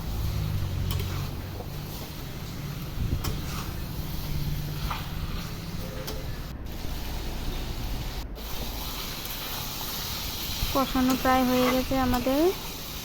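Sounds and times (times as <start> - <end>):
food sizzling in oil: 0.0 - 13.0
spatula scraping a pan: 3.2 - 6.1.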